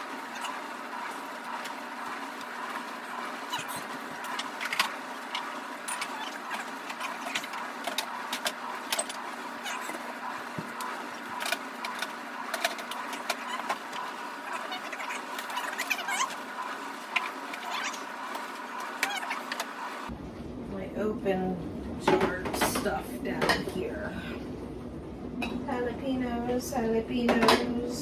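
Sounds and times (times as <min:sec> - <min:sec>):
refrigerator hum: 0:00.0 - 0:28.0.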